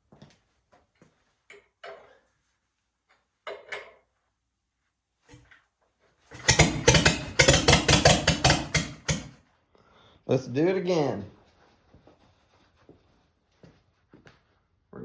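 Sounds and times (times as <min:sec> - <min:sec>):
engine cranking and starting: 0:06.3 - 0:09.3.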